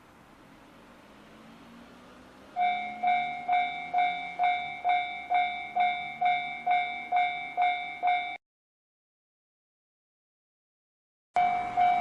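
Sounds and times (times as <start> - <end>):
level crossing warning bell ringing: 2.6 - 8.4, 11.4 - 12.0.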